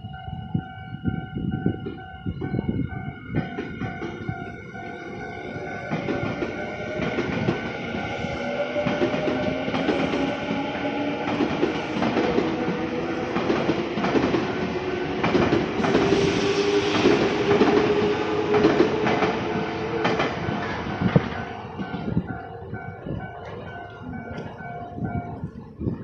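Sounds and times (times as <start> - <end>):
wheels clacking over rail joints: 8.4 - 16.2.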